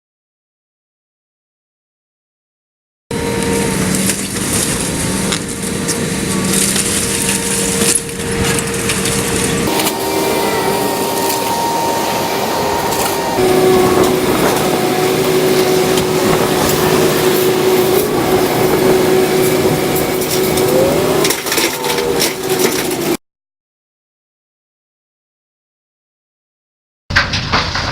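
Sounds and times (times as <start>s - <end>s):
machinery running with whine: 3.1s - 23.2s.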